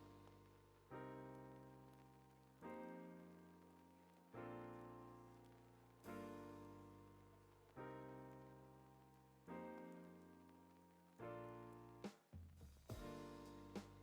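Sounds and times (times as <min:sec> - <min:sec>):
soft piano chords: 0:00.0 - 0:12.1, 0:12.9 - 0:14.0.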